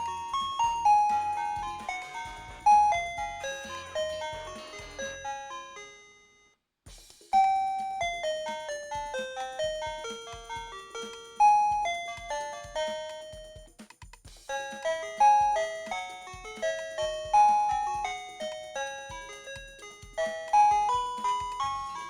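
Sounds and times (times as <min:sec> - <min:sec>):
doorbell chime tunes: 0:00.0 - 0:06.6, 0:07.4 - 0:13.7, 0:14.5 - 0:22.0.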